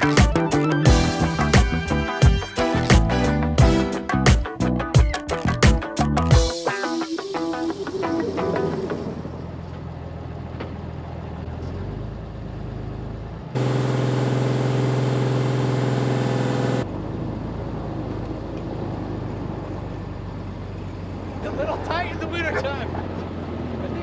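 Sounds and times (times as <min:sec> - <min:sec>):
loud drone: 0:06.4 - 0:09.8
diesel engine humming: 0:07.2 - 0:24.0.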